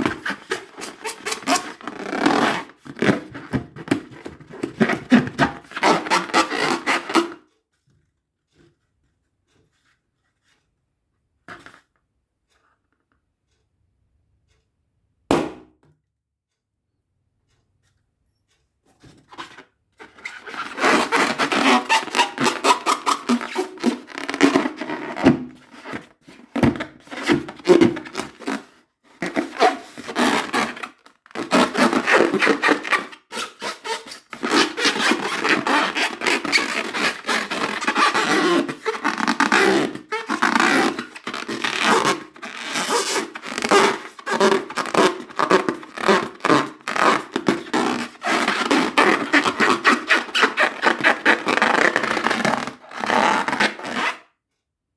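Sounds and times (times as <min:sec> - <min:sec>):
balloons rubbed and squeaking: 0:00.0 - 0:07.4, 0:19.3 - 0:54.3.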